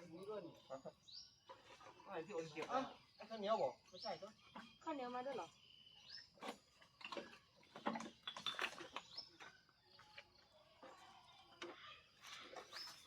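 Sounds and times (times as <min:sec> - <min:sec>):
faint bird chirps: 0:00.0 - 0:13.0.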